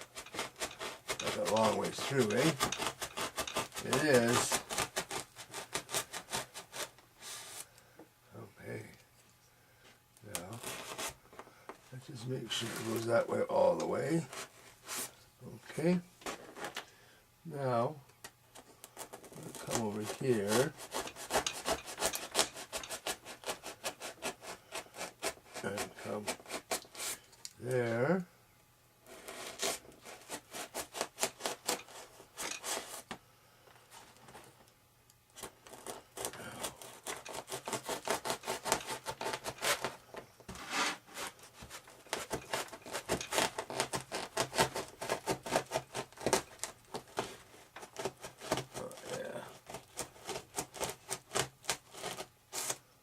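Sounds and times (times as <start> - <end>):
knife sawing through foam: 0.0 - 7.6, 10.3 - 11.2, 12.1 - 15.2, 19.0 - 27.9, 29.0 - 33.1, 35.4 - 52.8.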